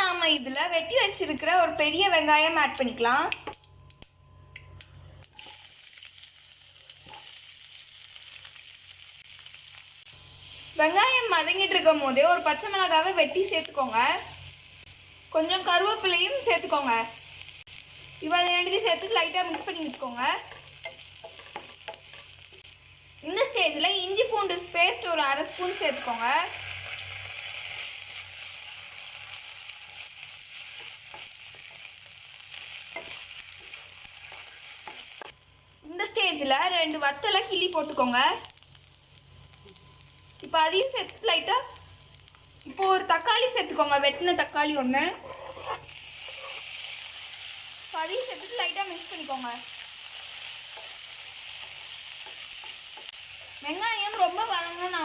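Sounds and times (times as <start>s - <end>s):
onion sizzling in oil: 0.0s - 55.0s.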